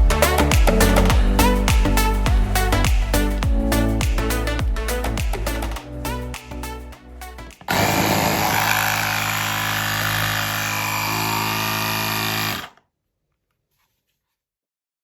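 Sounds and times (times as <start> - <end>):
electric compressor humming: 7.7 - 12.7.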